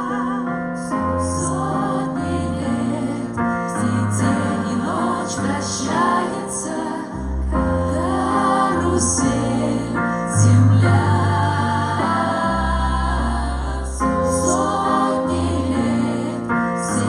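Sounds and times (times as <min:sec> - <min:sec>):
woman singing: 0:00.0 - 0:01.6.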